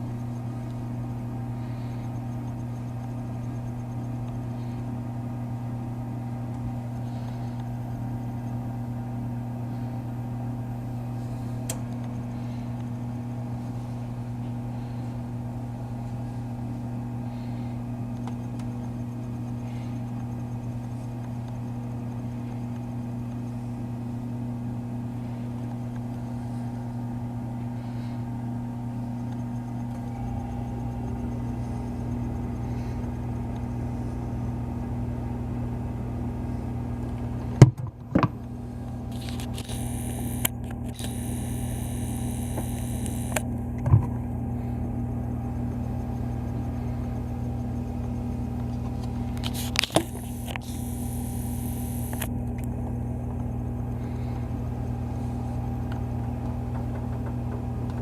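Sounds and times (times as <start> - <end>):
appliance electrical hum: 0.0 - 58.0
sharp clicks: 39.1 - 43.4, 49.4 - 52.3.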